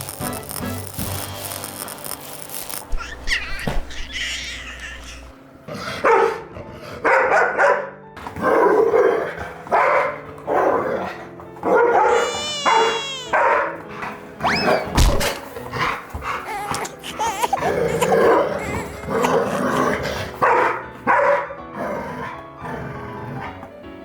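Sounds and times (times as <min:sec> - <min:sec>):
dog whining cry: 0:02.9 - 0:05.4, 0:11.9 - 0:13.6, 0:16.2 - 0:20.0
dog barking: 0:06.0 - 0:10.7, 0:11.7 - 0:13.8, 0:20.4 - 0:21.6.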